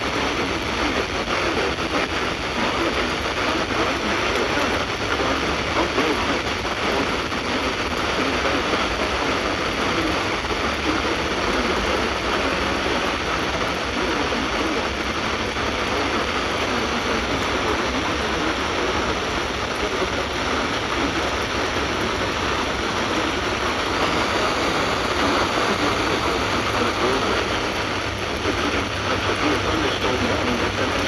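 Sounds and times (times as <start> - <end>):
static hiss: 0.0 - 31.0.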